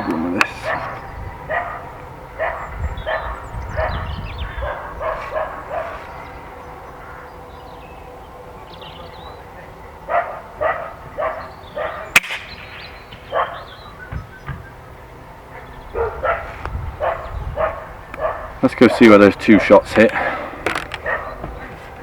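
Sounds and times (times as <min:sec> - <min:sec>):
dog barking: 0:00.4 - 0:06.1, 0:10.1 - 0:12.1, 0:13.3 - 0:13.8, 0:15.6 - 0:19.8, 0:21.0 - 0:21.5
air rifle shot: 0:12.1 - 0:13.3.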